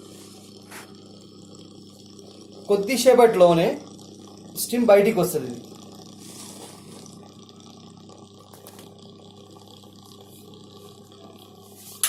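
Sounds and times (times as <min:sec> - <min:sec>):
low steady hum: 0:00.0 - 0:12.0
water bubbling: 0:00.0 - 0:12.0.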